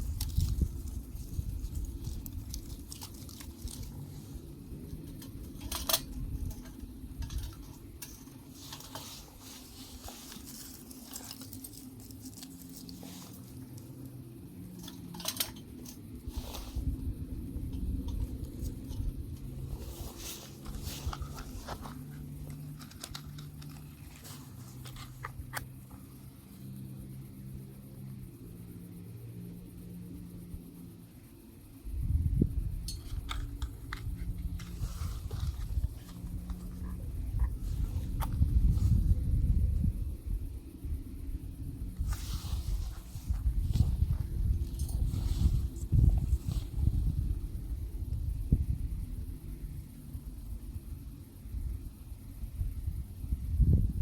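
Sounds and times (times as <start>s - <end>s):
beaver chewing and gnawing: 0.0s - 6.5s, 8.6s - 14.0s.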